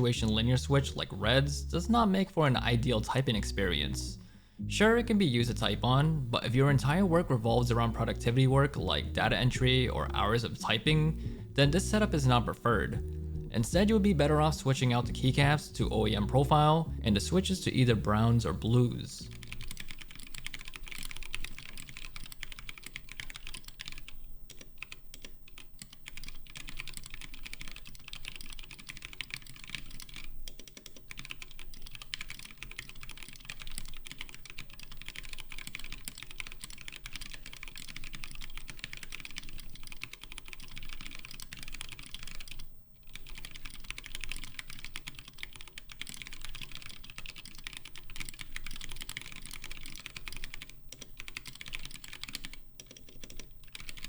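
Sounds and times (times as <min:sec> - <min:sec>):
fast typing on mechanical keyboard: 0:19.3 - 0:54.0.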